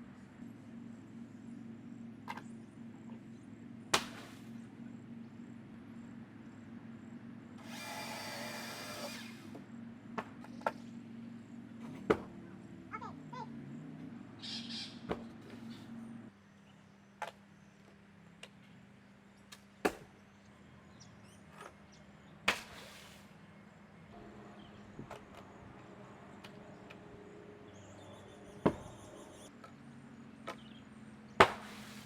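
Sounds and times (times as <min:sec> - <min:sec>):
faint steady hum: 0:00.0 - 0:22.4.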